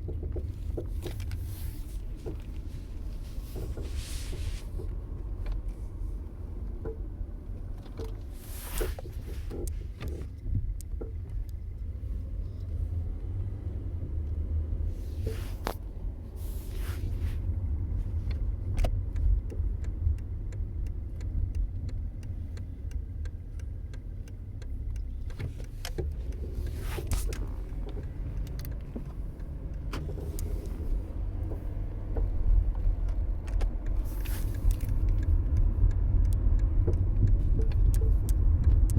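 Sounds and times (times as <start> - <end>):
low road rumble: 0.0 - 38.9
car suspension clunking: 18.2 - 38.9.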